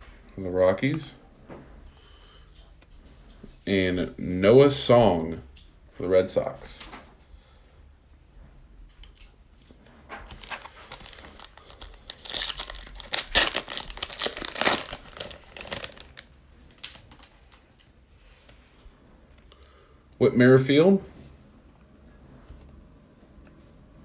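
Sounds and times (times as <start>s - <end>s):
foil wrapper tearing and crinkling: 10.3s - 17.8s.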